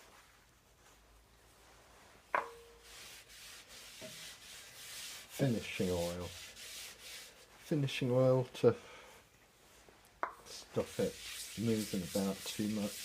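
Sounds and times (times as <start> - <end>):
cloth rubbing a wooden bowl: 0.0 - 7.8, 9.6 - 13.0.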